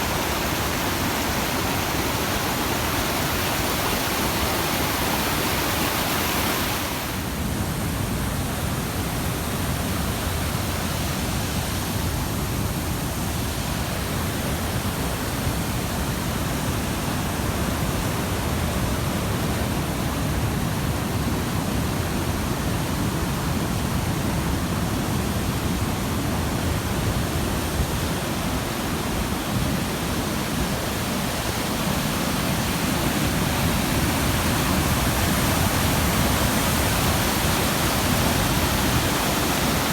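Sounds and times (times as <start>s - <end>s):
waterfall rushing: 0.0s - 7.5s, 26.0s - 39.9s.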